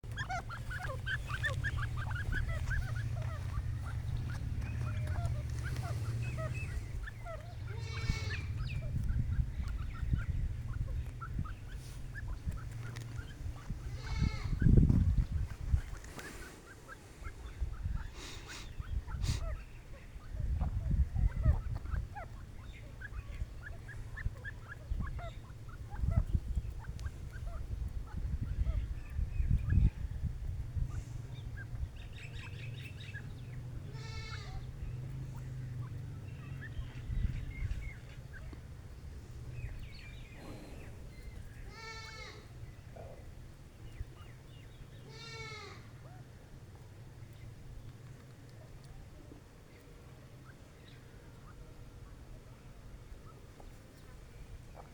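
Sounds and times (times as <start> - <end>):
low rumble: 0.0 - 15.9
birds chirping: 0.0 - 54.9
harsh bird call: 0.1 - 9.0.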